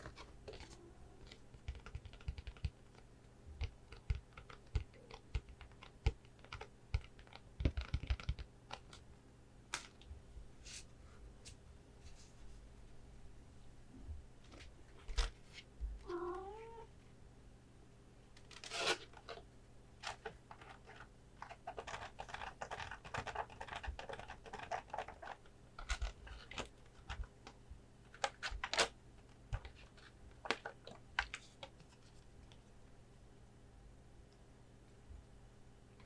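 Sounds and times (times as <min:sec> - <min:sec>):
cat meowing: 0:16.0 - 0:16.9.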